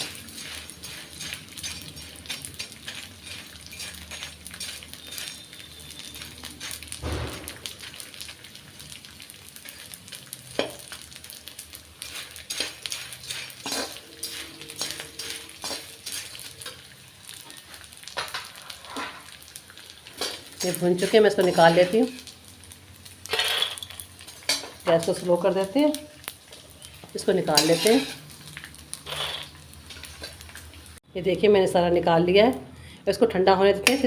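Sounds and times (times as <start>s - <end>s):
gum sizzling in hot ghee: 0.0s - 31.0s
heavy knock on pan: 7.0s - 7.7s
ladle scraping and clinking pan: 12.0s - 16.8s, 27.6s - 28.2s.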